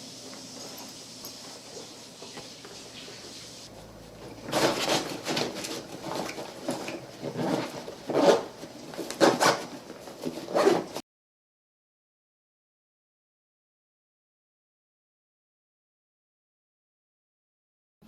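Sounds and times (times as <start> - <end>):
rustling and knocking of handling: 0.3 - 11.0.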